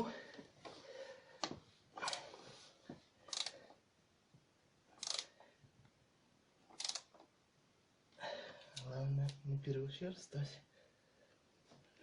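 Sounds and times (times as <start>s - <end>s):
screwdriver driving screw into wood: 5.0s - 5.3s, 6.7s - 7.1s.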